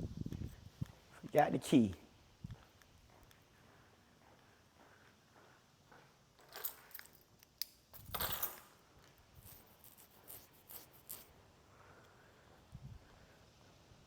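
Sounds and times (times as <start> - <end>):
keys jingling: 6.4 - 7.4, 8.0 - 8.7, 9.4 - 11.3.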